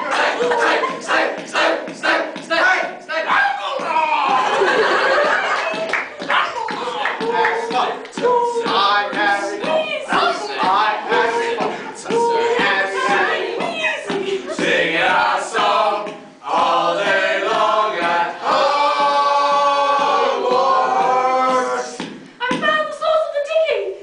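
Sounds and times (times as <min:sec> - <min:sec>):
voices singing unaccompanied: 0:00.0 - 0:23.0.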